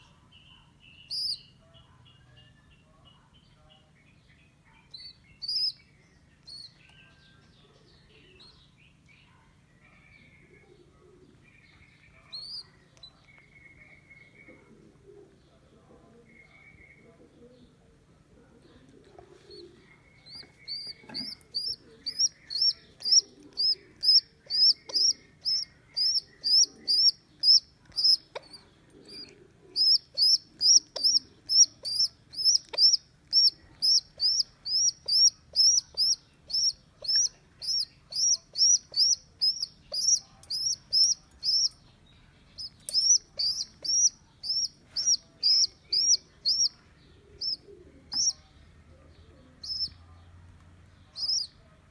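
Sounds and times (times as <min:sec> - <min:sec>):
baby pigeon squeaking: 0:01.0 - 0:01.6, 0:04.9 - 0:07.1, 0:12.2 - 0:13.3, 0:19.2 - 0:50.2, 0:51.0 - 0:51.6.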